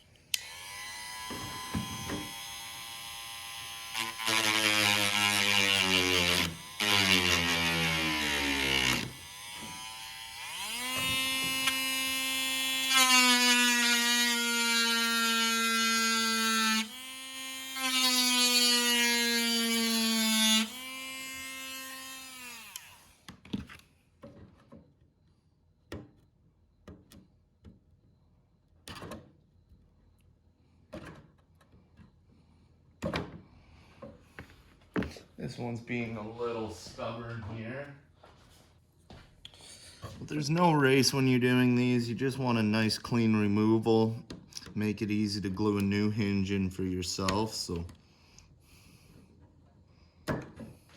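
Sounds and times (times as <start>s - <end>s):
electric drill whining: 0.3s - 23.4s.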